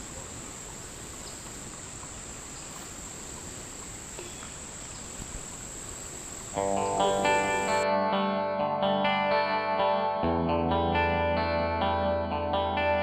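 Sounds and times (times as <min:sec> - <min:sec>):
insects chirring: 0:00.0 - 0:07.8
guitar music: 0:06.6 - 0:13.0.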